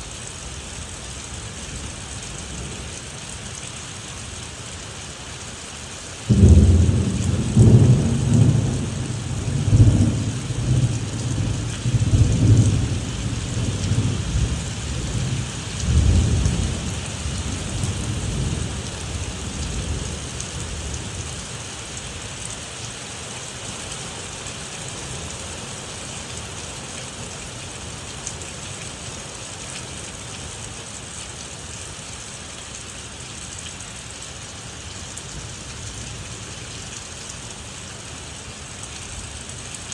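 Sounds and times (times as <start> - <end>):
rain falling: 0.0 - 39.9
thunder rumbling: 6.3 - 20.4.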